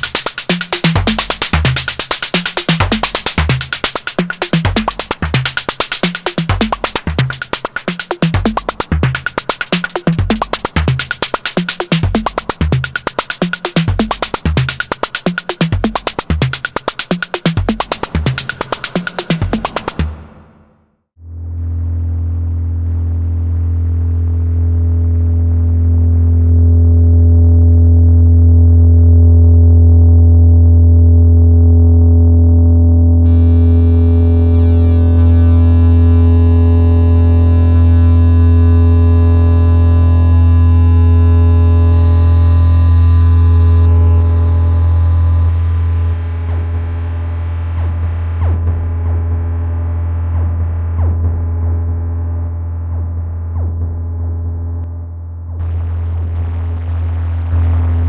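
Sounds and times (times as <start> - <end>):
bright high synth overtones: 33.3 - 38.3
low synth drone: 33.3 - 58.0.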